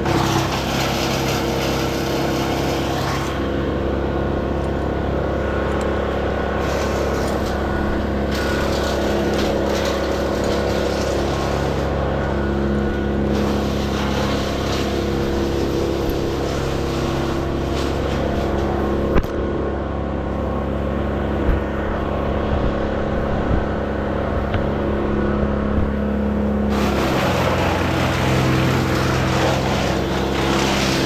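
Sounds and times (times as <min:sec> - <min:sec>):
engine running: 0:00.0 - 0:31.0.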